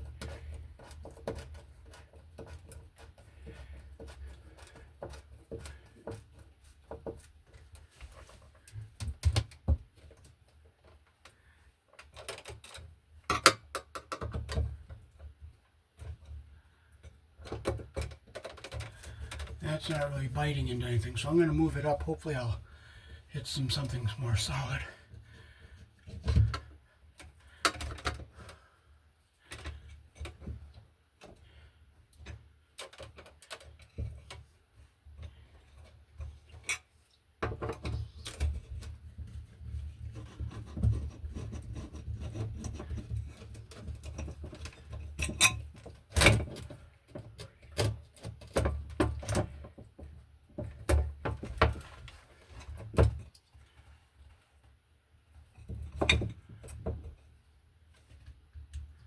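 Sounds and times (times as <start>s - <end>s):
screw scraping into drywall: 37.7s - 46.9s.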